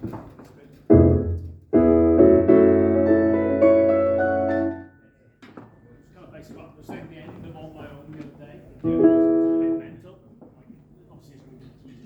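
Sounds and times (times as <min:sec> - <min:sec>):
keyboard chords through speakers: 0:00.9 - 0:04.9.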